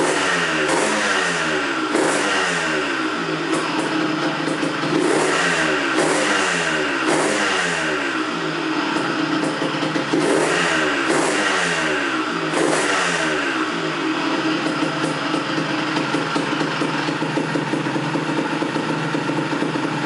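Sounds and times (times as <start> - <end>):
engine rattle: 0.0 - 20.0
two-stroke engine revving: 0.0 - 20.0.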